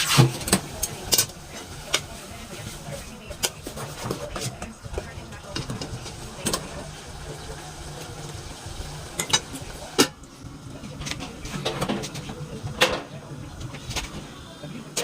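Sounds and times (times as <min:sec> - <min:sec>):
metal spoon scraping a pot: 0:00.0 - 0:02.1.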